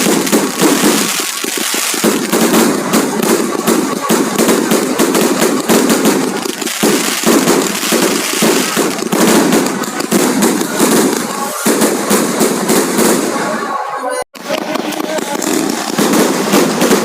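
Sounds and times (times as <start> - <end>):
fireworks and firecrackers banging: 0.0 - 17.0.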